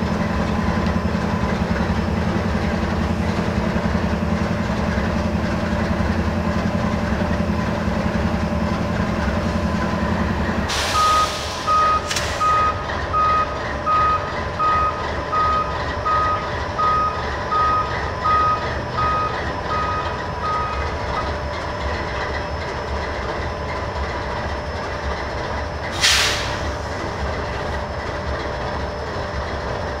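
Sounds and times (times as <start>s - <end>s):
diesel locomotive rumble: 0.0s - 30.0s
air hiss bursts: 10.7s - 12.5s, 25.9s - 26.8s.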